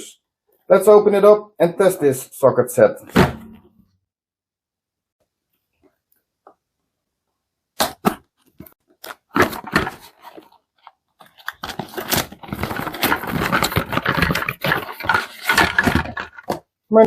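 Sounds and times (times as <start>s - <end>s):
packaging crinkling and rustling: 8.4s - 16.6s
packaging snapping: 11.2s - 16.6s.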